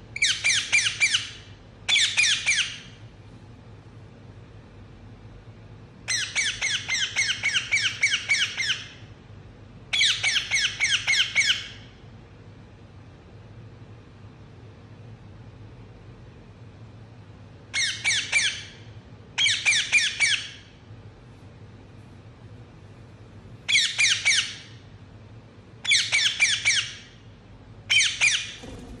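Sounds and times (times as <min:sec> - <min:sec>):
parakeet squawking: 0:00.2 - 0:02.8, 0:06.1 - 0:08.9, 0:23.7 - 0:24.7, 0:25.8 - 0:27.1, 0:27.9 - 0:28.6.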